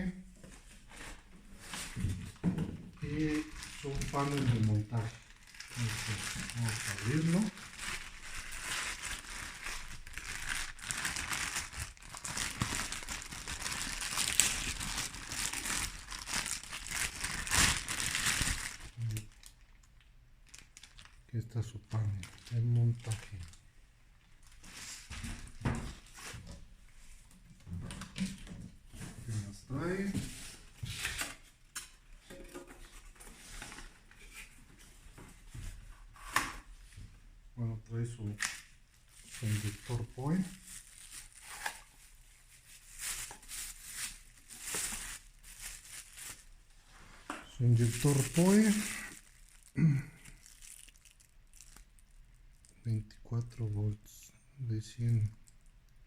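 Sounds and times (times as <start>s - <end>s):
packaging crinkling: 3.0s - 21.2s, 38.2s - 46.6s, 47.5s - 52.8s
packaging rustling and knocks: 43.0s - 46.4s.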